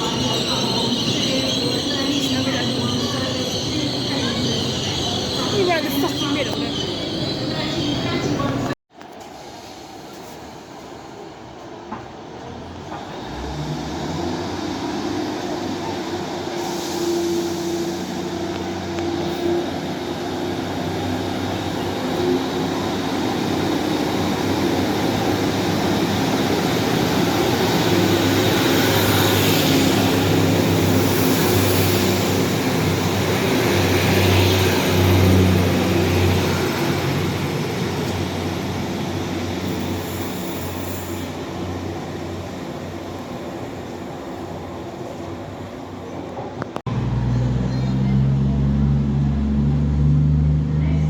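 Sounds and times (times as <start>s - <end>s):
diesel train engine drone: 0.0s - 9.9s, 10.5s - 51.0s
high hissing wheels or brakes: 13.2s - 43.8s.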